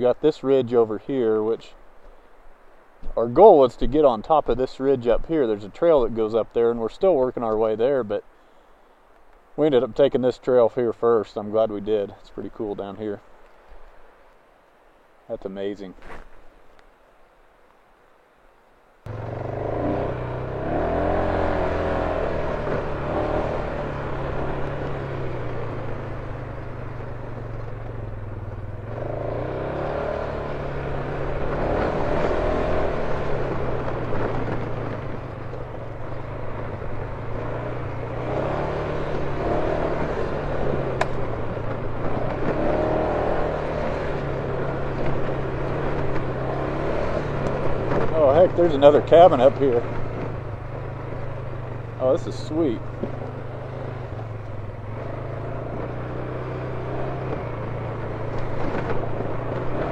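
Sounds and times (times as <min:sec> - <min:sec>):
vehicle engine revving: 0:19.1 - 0:59.9.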